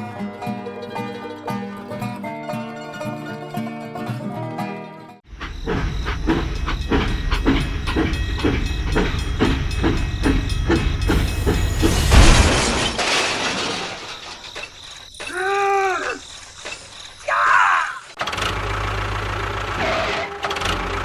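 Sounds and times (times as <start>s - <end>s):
rhythmic mechanical chugging: 5.2s - 12.5s.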